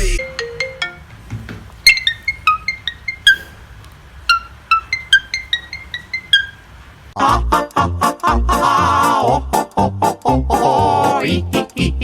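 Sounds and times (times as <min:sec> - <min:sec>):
marimba-like ringtone melody: 0:00.0 - 0:01.1, 0:01.9 - 0:03.5, 0:04.3 - 0:06.6.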